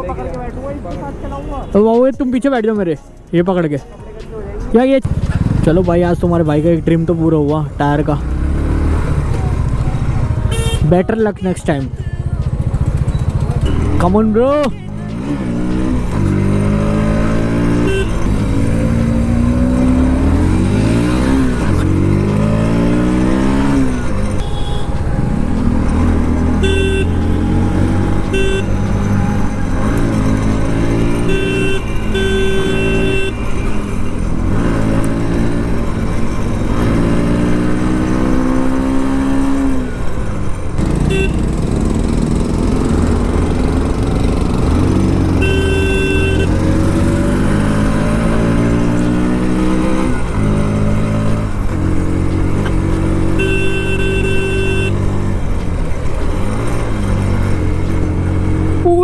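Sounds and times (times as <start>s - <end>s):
wind and road noise: 0.0s - 59.0s
motorcycle engine accelerating: 5.0s - 59.0s
short vehicle horn beeps: 10.5s - 10.9s, 17.8s - 18.3s, 24.4s - 25.0s, 26.6s - 27.3s, 28.3s - 28.8s, 31.3s - 34.0s, 41.0s - 41.5s, 45.4s - 46.6s, 53.4s - 55.0s.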